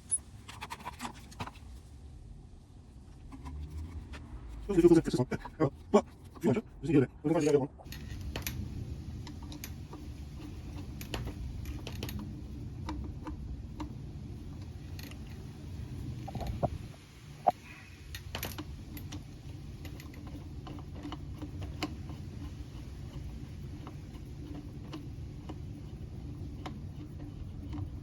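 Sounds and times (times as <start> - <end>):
steady low hum: 1.4 - 28.0
small parts clicking and tapping: 7.8 - 8.6, 9.2 - 15.4, 18.1 - 28.0.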